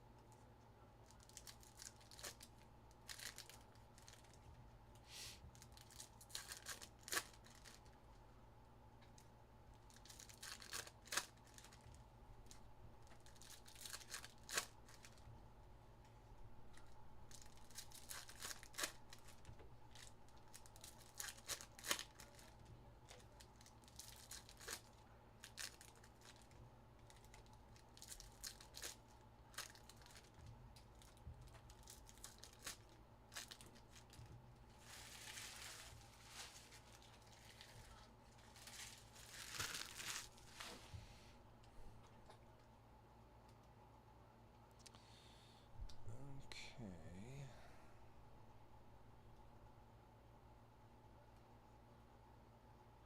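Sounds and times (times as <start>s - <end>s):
wrappers tearing and crinkling: 1.0s - 4.4s, 5.5s - 8.0s, 9.8s - 15.2s, 16.7s - 40.8s
faint rustles: 32.6s - 42.0s.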